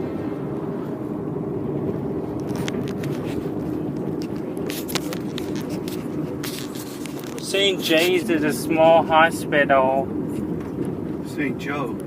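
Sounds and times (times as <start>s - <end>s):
car cabin road and engine rumble: 0.0s - 12.0s.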